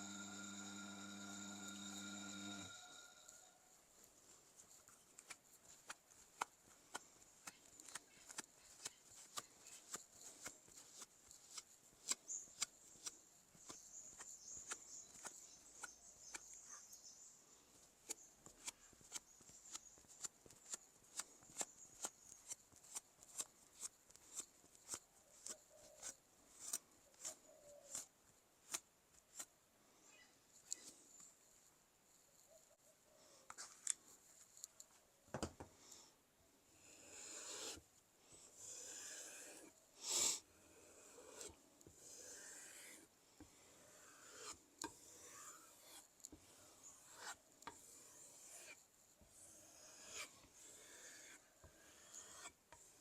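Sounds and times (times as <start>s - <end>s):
faint steady high tone: 0.0s - 3.8s.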